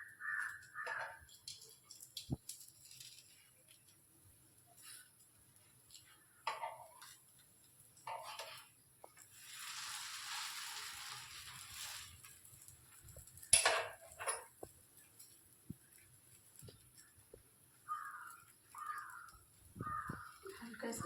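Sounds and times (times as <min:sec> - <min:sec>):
oil sizzling: 0:00.2 - 0:21.0
spatula scraping a pan: 0:08.1 - 0:08.7.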